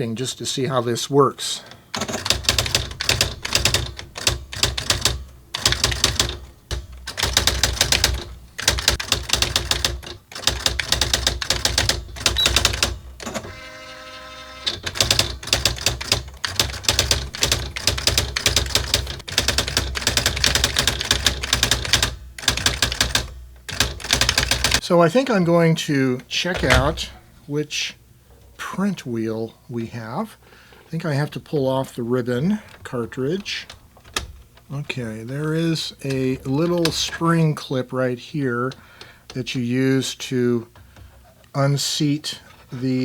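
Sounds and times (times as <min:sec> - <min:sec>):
typewriter print wheel strikes: 0:02.0 - 0:13.6
typewriter motor whir: 0:02.0 - 0:24.8.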